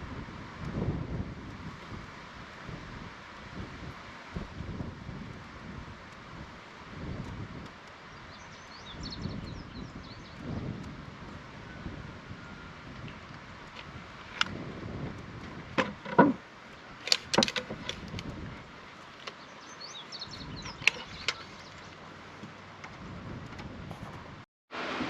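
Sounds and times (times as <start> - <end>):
boards and tools knocking: 15.7 - 16.4.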